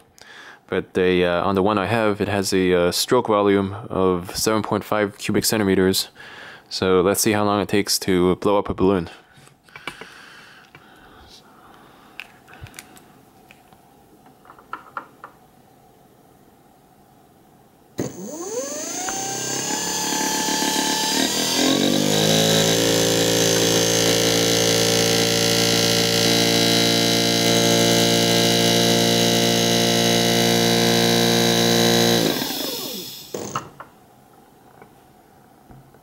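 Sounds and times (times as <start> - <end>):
compressor motor whine: 18.0 - 33.6.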